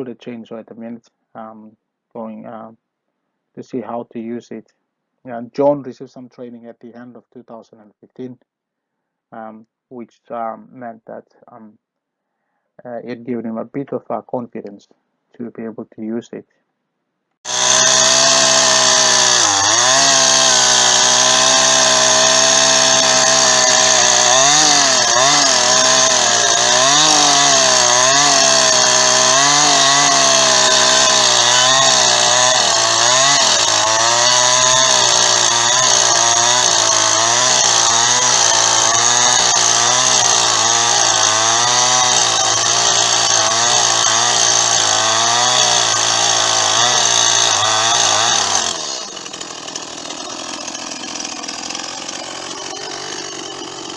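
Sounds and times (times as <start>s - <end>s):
chainsaw running hard: 17.4s - 53.9s.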